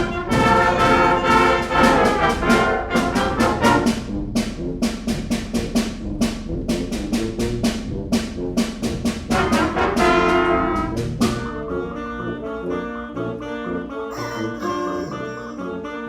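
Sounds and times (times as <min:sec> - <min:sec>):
concert band playing galop: 0:00.0 - 0:04.1, 0:08.9 - 0:11.6.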